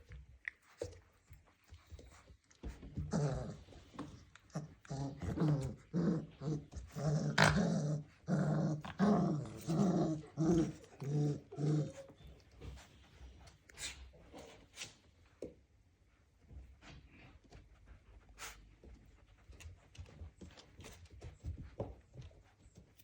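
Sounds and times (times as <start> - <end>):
puppies growling: 2.6 - 12.8.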